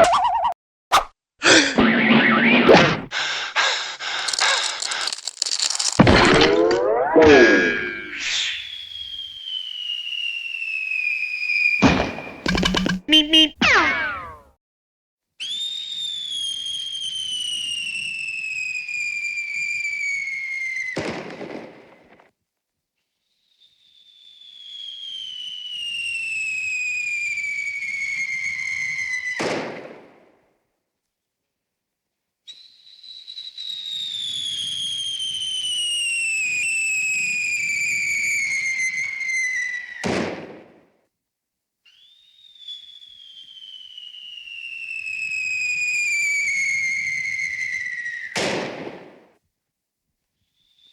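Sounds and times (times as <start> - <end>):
cartoon falling whistle: 6.1 - 14.5.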